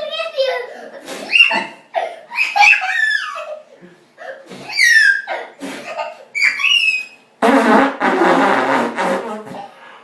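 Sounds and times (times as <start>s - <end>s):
toddler squealing laughter: 0.5s - 7.3s
lips blowing fart noise: 7.4s - 9.8s.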